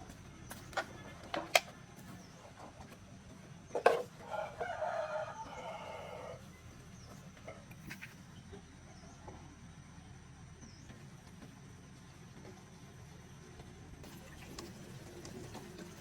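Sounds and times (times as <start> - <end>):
rooster crowing: 4.2 - 6.4.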